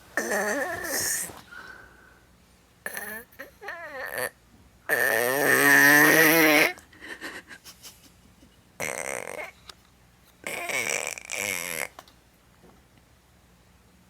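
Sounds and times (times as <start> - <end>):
child making snore noises: 0.2 - 1.3, 2.9 - 6.8, 10.5 - 11.9.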